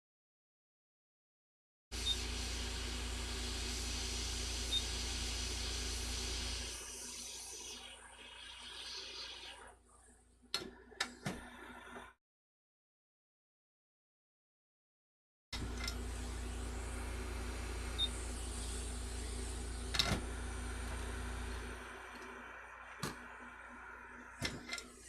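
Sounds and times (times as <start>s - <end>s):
hot air blower hissing: 2.0s - 8.0s, 15.6s - 25.0s.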